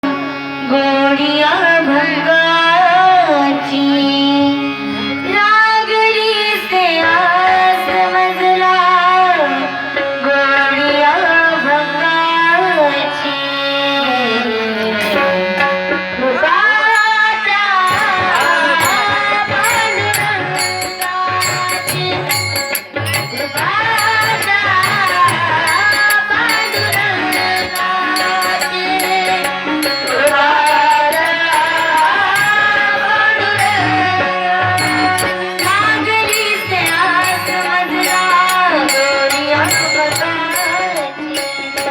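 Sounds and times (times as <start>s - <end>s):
tabla: 10.0s - 41.9s
steady percussion beat: 17.0s - 17.2s, 17.9s - 41.9s.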